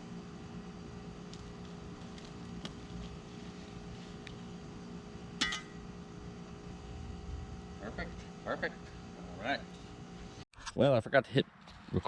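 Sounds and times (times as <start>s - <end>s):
engine running low drone: 0.0s - 10.4s
sharp metallic clink: 5.4s - 5.8s.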